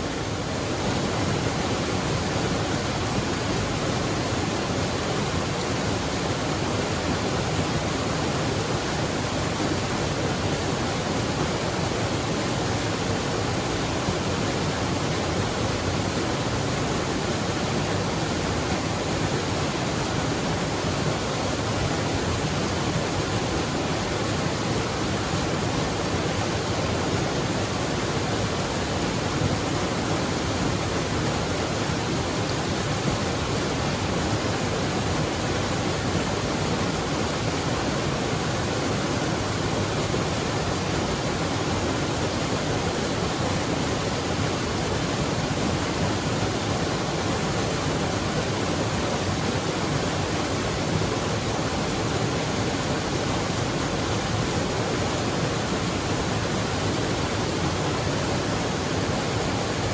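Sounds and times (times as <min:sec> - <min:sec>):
waterfall roaring: 0:00.0 - 0:59.9.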